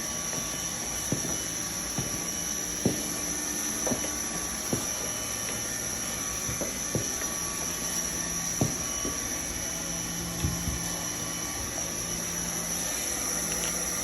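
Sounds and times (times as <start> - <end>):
high steady whine: 0.0 - 14.0
hot-air welding gun blower hiss: 0.0 - 14.0.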